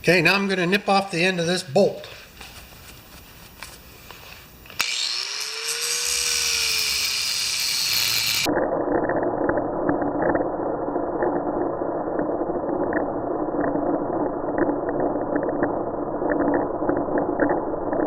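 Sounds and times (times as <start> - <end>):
power grinder cutting steel: 4.7 - 8.5.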